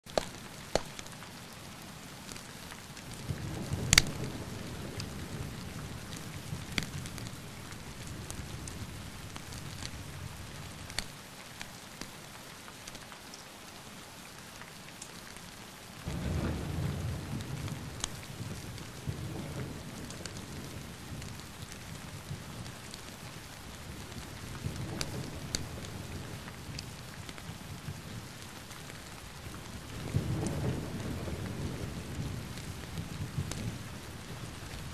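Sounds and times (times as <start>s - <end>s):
steady rain falling: 0.0s - 34.9s
thunder rumbling: 3.1s - 11.0s, 16.0s - 28.4s, 29.1s - 34.9s
sharp thunder crack: 16.1s - 20.7s.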